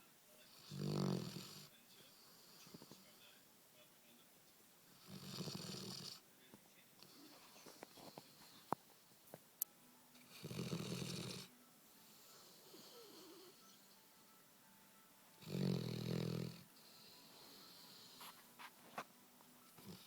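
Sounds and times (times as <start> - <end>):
dog snoring: 0.4 - 3.1, 4.9 - 6.2, 10.2 - 13.9, 15.4 - 18.4, 19.8 - 20.0.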